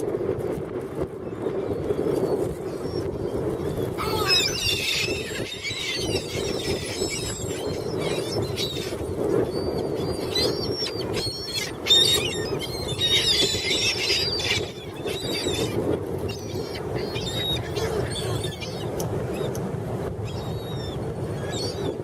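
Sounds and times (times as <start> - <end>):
seagulls crying: 3.7 - 19.0.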